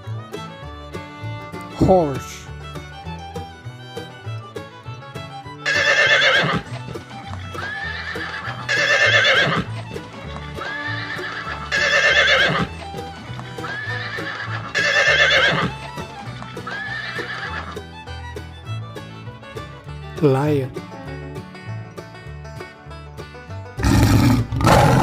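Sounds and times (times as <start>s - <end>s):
background music: 0.0s - 25.0s
horse neighing: 5.6s - 9.9s, 10.5s - 12.9s, 13.6s - 15.9s, 16.6s - 17.8s, 23.8s - 25.0s.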